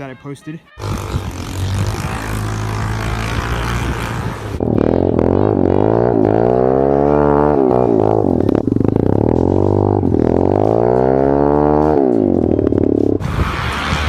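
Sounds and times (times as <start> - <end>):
steady rushing noise: 0.8 - 5.8, 12.6 - 14.0
small motorbike engine revving: 0.8 - 14.0.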